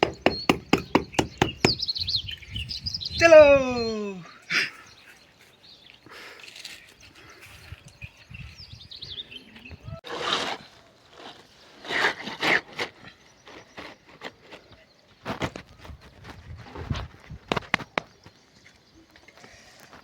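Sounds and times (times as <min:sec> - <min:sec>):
bird chirping: 0:00.0 - 0:10.0.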